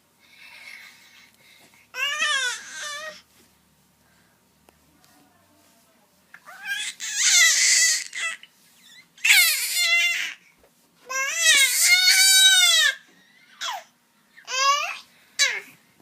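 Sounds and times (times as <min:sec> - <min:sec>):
baby crying: 0:02.0 - 0:03.2, 0:06.5 - 0:08.5, 0:09.2 - 0:10.4, 0:11.1 - 0:15.7.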